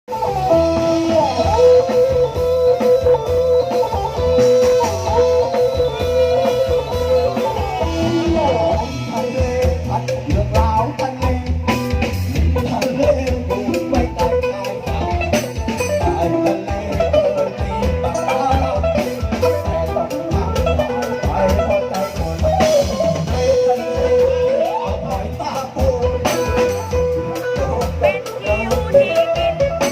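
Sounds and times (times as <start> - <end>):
brass band sliding melody: 0.1 - 10.2
steady drum beat: 0.1 - 29.9.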